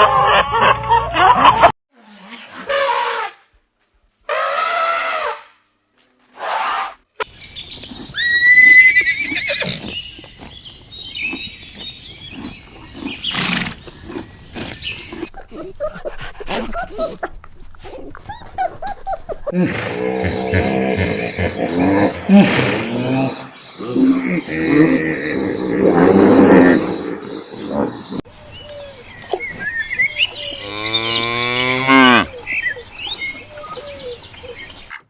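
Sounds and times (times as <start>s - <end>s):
mixed animal noises: 7.2s - 16.5s, 19.5s - 35.0s
horses neighing: 7.3s - 15.4s, 19.3s - 27.4s.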